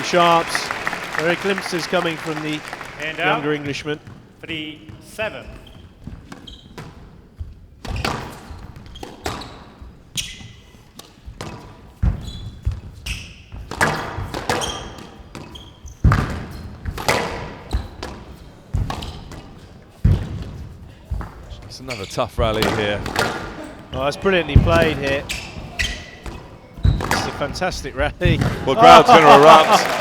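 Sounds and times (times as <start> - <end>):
squash ball hits: 11.0 - 21.5, 22.5 - 27.6, 28.2 - 28.7.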